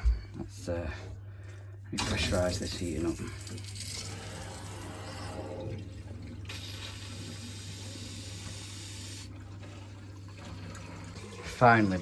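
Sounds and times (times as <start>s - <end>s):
water hissing through pipe: 2.0s - 12.0s.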